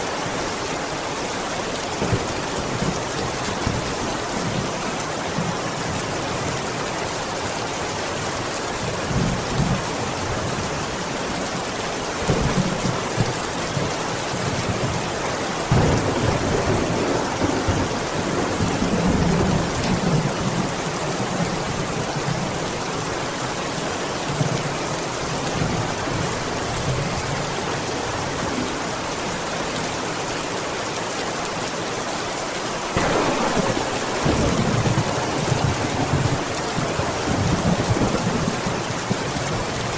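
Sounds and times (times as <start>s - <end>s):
heavy rain falling: 0.0s - 39.9s
thunder rumbling: 14.6s - 20.7s, 33.0s - 39.9s.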